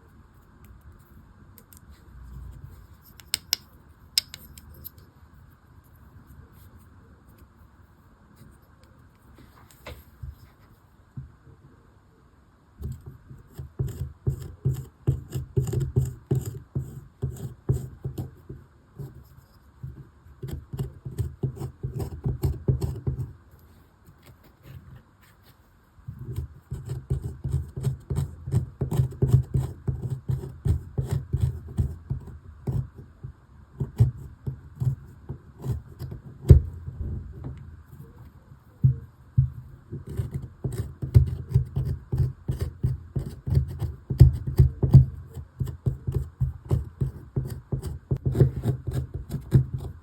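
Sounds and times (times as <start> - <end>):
hand tool scraping plaster: 13.5 - 18.4, 26.3 - 32.9, 40.0 - 50.0.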